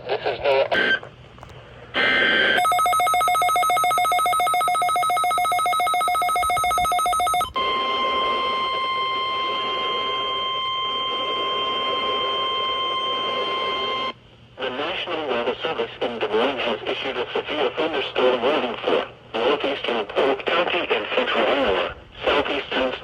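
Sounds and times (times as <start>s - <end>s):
steady warning alarm tone: 2.3s - 14.2s
pulsing electronic alert tone: 2.6s - 7.5s.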